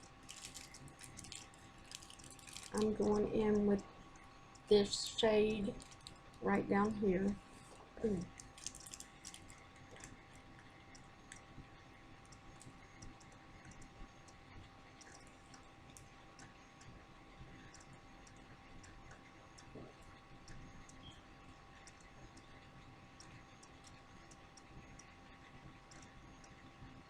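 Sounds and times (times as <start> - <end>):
faint steady hum: 0.0 - 27.0
faint small clicks: 15.0 - 17.0, 23.2 - 25.2, 25.9 - 26.6.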